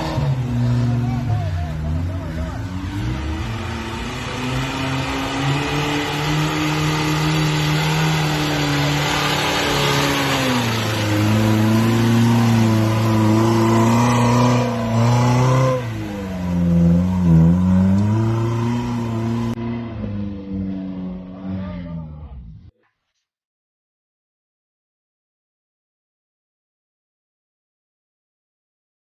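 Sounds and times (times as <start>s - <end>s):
engine revving: 0.0s - 22.7s.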